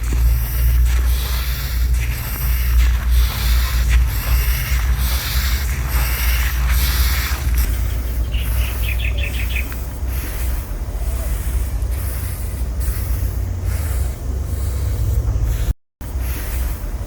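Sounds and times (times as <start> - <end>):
rice grains swishing: 0.0 - 15.0
steady low rumble: 0.0 - 17.0
bird trilling: 3.1 - 9.9.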